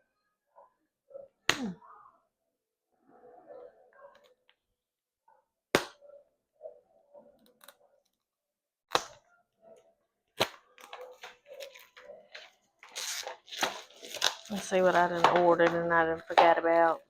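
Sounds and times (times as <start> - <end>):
package snaps: 8.9 - 9.2, 10.4 - 11.4
package rustling: 10.8 - 16.3.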